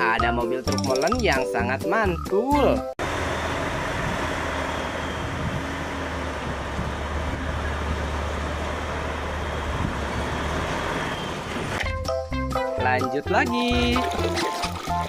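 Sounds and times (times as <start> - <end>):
truck engine running: 3.0 - 11.8.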